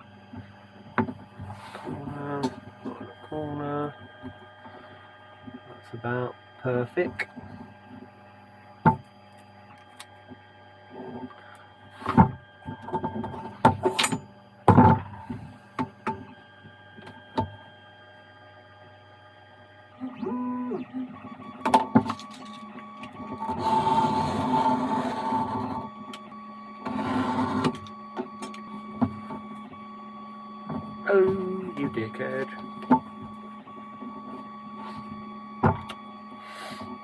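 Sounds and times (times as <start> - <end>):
electrical hum: 0.0 - 37.0
small motor whirring: 20.0 - 37.0.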